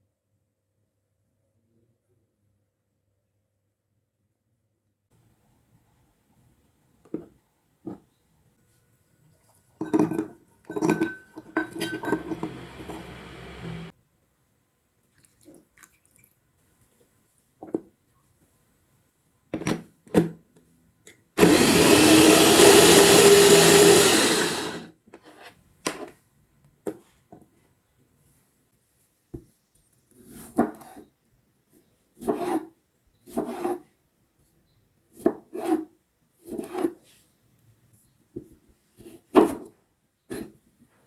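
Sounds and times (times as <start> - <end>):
kitchen utensils clattering: 9.9 - 13.9
electric blender running: 11.7 - 13.9, 21.4 - 24.9.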